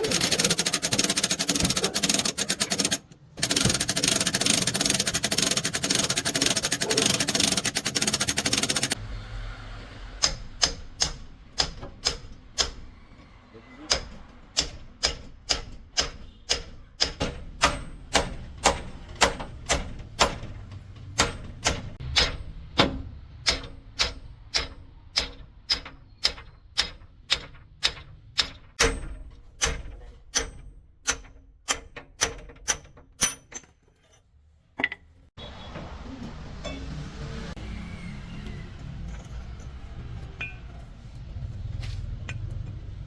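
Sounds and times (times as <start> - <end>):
hammer striking metal: 40.4 - 40.8.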